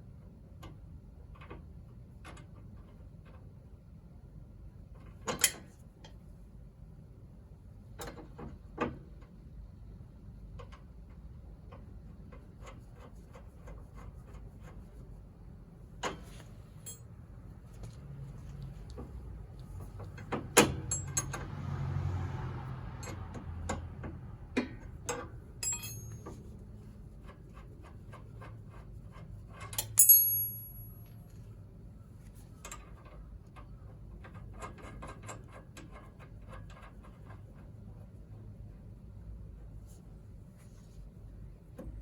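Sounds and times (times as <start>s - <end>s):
metallic clicks and knocks: 18.9s - 21.5s, 23.0s - 26.5s
ringing metal clink: 25.6s - 26.4s, 29.8s - 31.2s.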